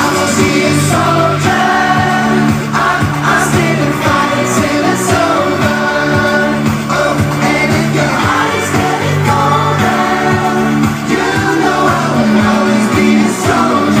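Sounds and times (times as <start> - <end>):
live pop band: 0.0 - 14.0
men singing together: 0.0 - 14.0.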